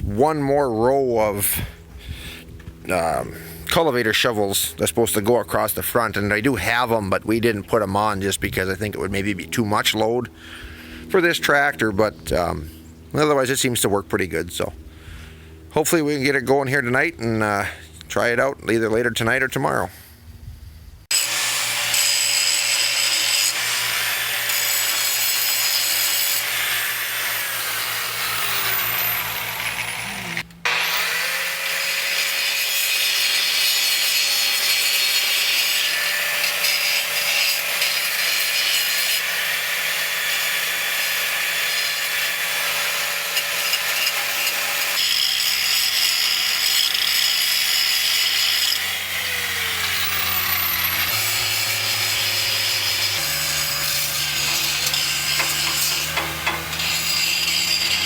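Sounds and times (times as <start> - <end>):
angle grinder grinding steel: 21.1 - 58.0.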